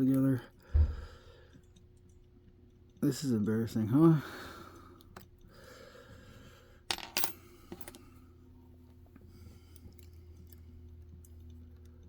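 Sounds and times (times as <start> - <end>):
low steady hum: 0.0 - 12.0
small metal tools clinking: 6.9 - 8.2.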